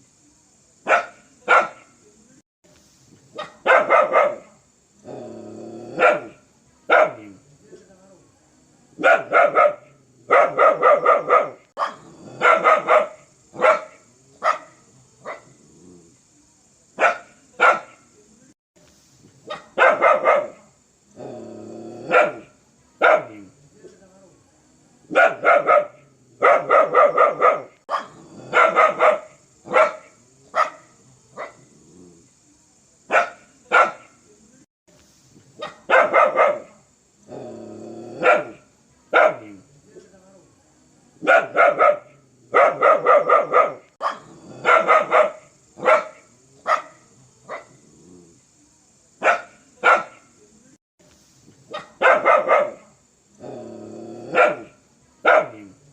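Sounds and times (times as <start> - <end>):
dog barking fiercely: 0.9 - 1.9, 3.4 - 4.6, 5.9 - 7.3, 9.0 - 15.5, 17.0 - 18.0, 19.5 - 20.7, 22.0 - 23.4, 25.1 - 31.7, 33.1 - 34.1, 35.6 - 36.8, 38.2 - 38.6, 39.2 - 39.5, 41.2 - 47.8, 49.2 - 50.2, 51.7 - 52.9, 54.3 - 55.7.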